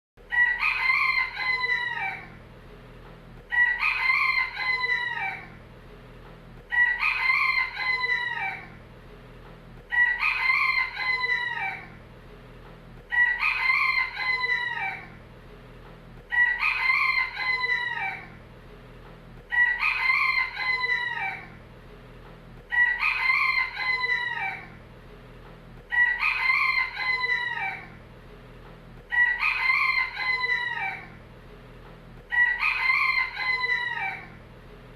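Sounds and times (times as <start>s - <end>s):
rooster crowing: 0.2s - 2.4s, 3.5s - 5.6s, 6.7s - 8.8s, 9.9s - 12.0s, 13.1s - 15.2s, 16.3s - 18.4s, 19.5s - 21.6s, 22.7s - 24.8s, 25.9s - 28.0s, 29.0s - 31.2s, 32.2s - 34.4s.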